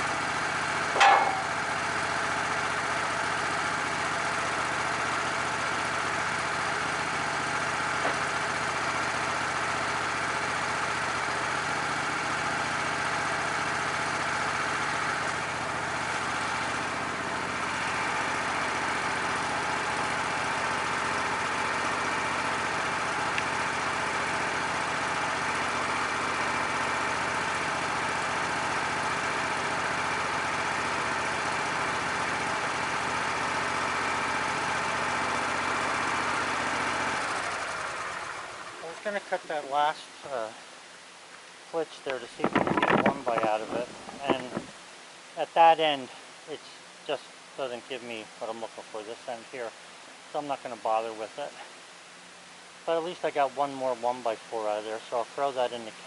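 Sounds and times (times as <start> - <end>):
sawmill engine running: 0.0 - 40.7, 41.7 - 44.8.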